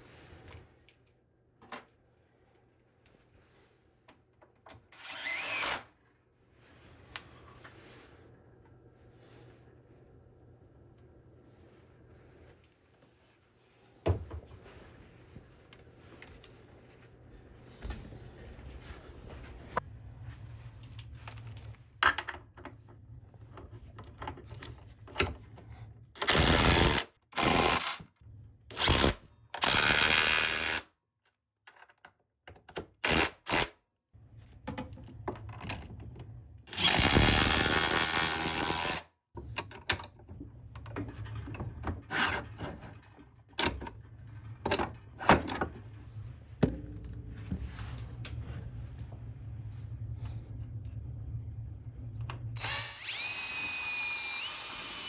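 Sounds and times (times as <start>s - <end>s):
power drill running: 5.0s - 5.9s, 36.8s - 39.0s, 52.6s - 55.0s
tool handling knocks and clicks: 46.6s - 49.3s.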